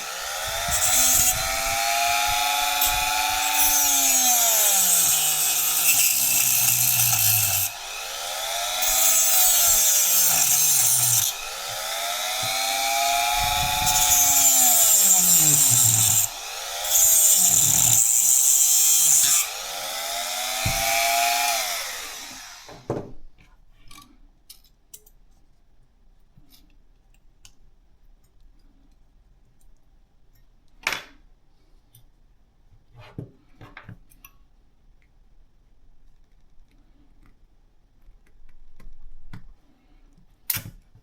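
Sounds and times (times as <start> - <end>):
electric power tool running: 0.0 - 22.9.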